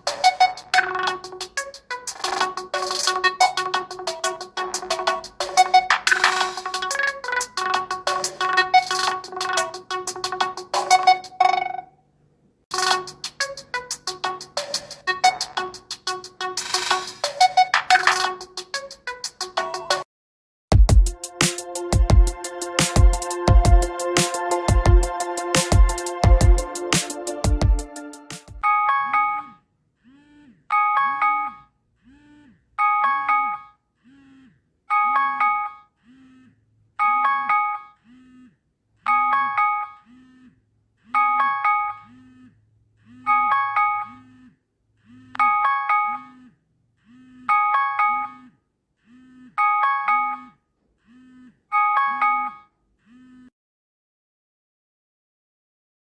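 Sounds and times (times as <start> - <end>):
electronic music with a beat: 0.0 - 11.7, 12.7 - 20.1, 20.7 - 29.2
chime phrase ringtone: 28.6 - 29.6, 30.7 - 31.6, 32.8 - 33.6, 34.9 - 35.8, 37.0 - 37.9, 41.2 - 42.0, 43.3 - 44.2, 45.4 - 46.3, 47.5 - 48.4, 49.6 - 50.5, 51.8 - 52.6.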